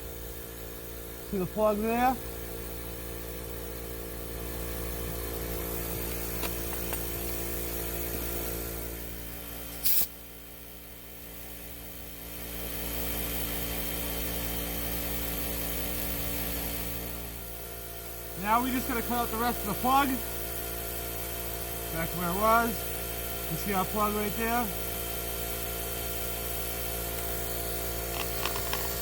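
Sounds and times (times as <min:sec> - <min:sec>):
short loud hiss: 0:09.8 - 0:10.2
machine humming: 0:26.5 - 0:29.0.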